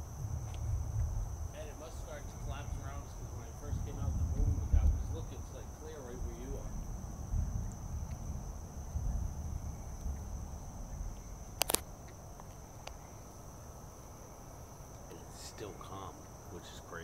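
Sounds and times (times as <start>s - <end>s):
low rumble: 0.0s - 12.9s
crickets chirring: 0.0s - 17.0s.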